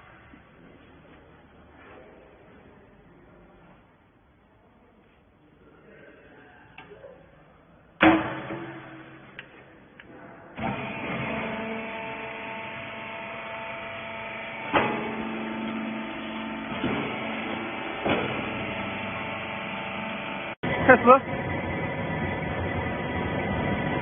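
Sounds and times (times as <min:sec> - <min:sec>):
metal clang: 0:08.0 - 0:09.6
baler motor humming: 0:10.6 - 0:24.0.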